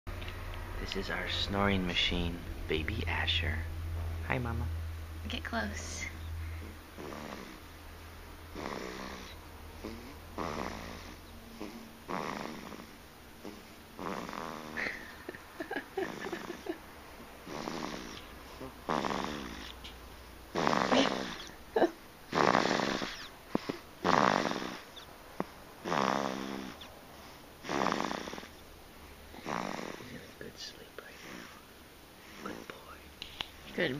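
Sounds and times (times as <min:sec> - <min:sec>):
baby snoring: 0:06.6 - 0:07.8, 0:08.4 - 0:16.8, 0:17.4 - 0:19.8, 0:20.5 - 0:28.6, 0:29.3 - 0:33.0.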